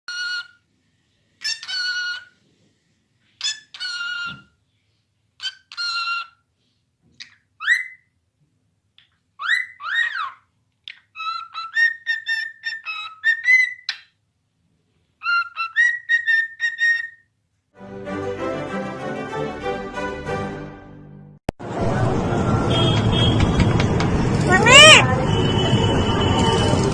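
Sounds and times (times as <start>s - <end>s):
parrot calling and whistling: 0.1s - 0.6s, 1.4s - 2.4s, 3.4s - 4.5s, 5.4s - 6.4s, 7.2s - 8.1s, 9.4s - 14.1s, 15.2s - 17.3s, 24.5s - 25.0s.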